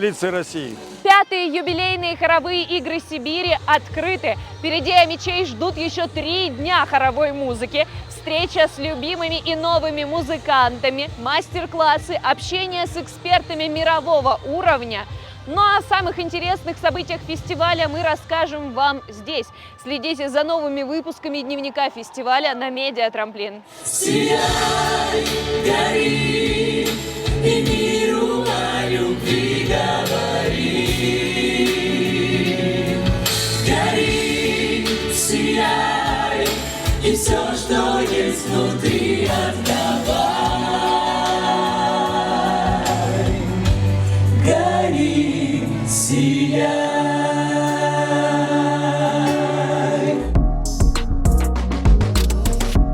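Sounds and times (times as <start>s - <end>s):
choir singing held chords: 23.7s - 50.5s
low steady accompaniment: 24.0s - 52.9s.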